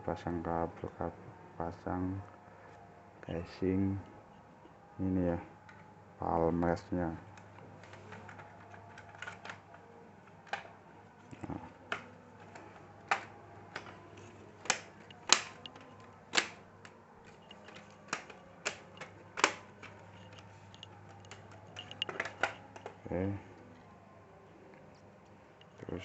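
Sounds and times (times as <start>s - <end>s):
plastic laptop parts clicking: 7.3s - 23.0s.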